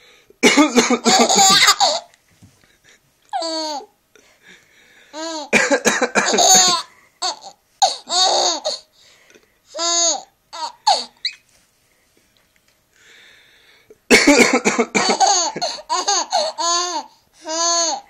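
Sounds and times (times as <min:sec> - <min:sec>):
man coughing: 0:00.4 - 0:01.8, 0:05.5 - 0:06.9, 0:14.1 - 0:15.8
child squealing laughter: 0:01.2 - 0:02.0, 0:09.9 - 0:11.4.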